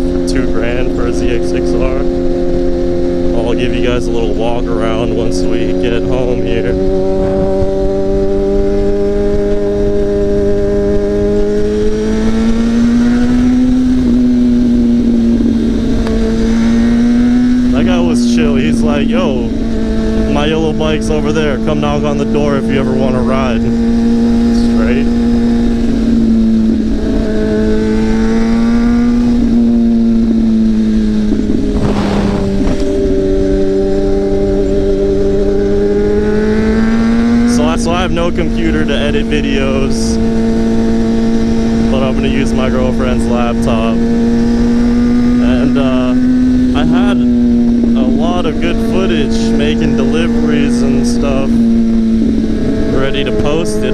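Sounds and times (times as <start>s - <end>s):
motorcycle engine running: 0.0s - 53.9s
wind rumble: 0.0s - 53.9s
brief rush of noise: 31.8s - 33.0s.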